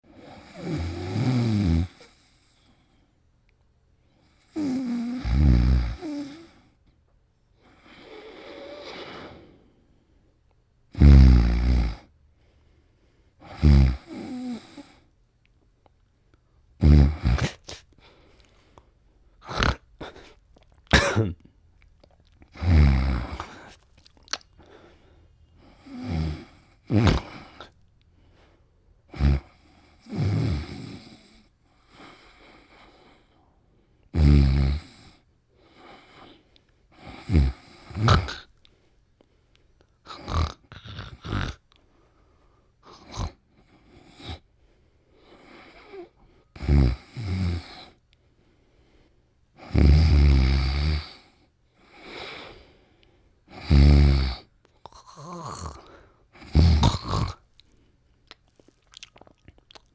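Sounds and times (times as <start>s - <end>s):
person snoring: 0.1s - 2.5s, 4.4s - 6.6s, 7.6s - 9.6s, 10.9s - 12.1s, 13.4s - 15.0s, 16.8s - 17.8s, 19.4s - 20.4s, 22.5s - 23.8s, 25.6s - 27.8s, 29.1s - 33.0s, 34.1s - 36.3s, 37.0s - 38.5s, 40.1s - 41.6s, 42.8s - 44.4s, 45.3s - 48.0s, 49.6s - 52.6s, 53.5s - 57.4s
short sharp snorts: 8.0s - 9.6s, 16.8s - 18.2s, 19.4s - 21.3s, 25.9s - 27.7s, 37.0s - 38.5s, 40.1s - 41.6s, 53.5s - 57.4s.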